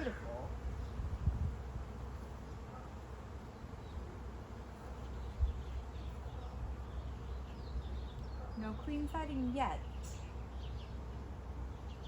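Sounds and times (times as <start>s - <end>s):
honeybees buzzing: 0.0s - 8.0s.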